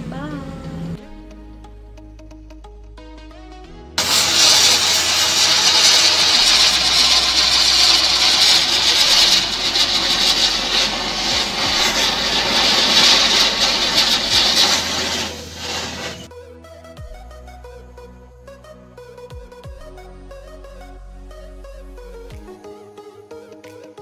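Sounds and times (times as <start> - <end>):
firework spraying sparks hiss: 4.0 - 16.3.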